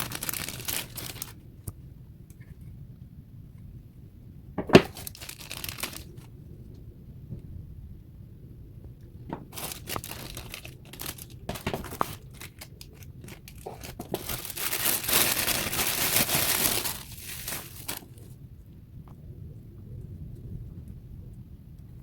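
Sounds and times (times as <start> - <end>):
packaging crinkling: 0.0 - 1.4, 4.6 - 6.3, 9.3 - 18.4.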